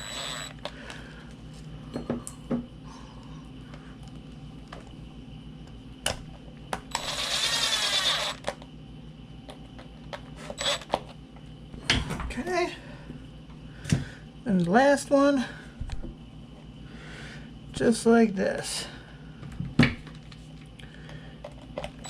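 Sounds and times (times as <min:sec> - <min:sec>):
faint electrical hum: 0:00.0 - 0:22.0.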